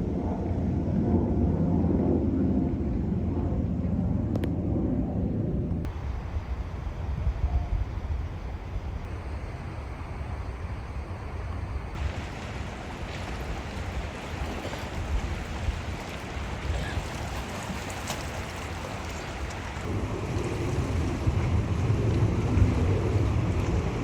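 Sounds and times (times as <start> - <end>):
wind rumble on microphone: 0.0 - 24.0
sea waves washing ashore: 8.0 - 24.0.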